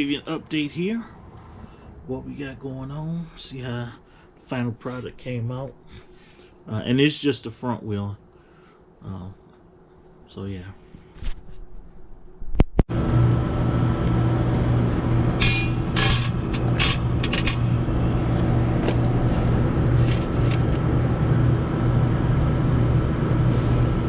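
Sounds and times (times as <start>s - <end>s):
low machine hum: 0.0s - 24.0s
metal bolts clicking and rattling: 15.3s - 17.6s.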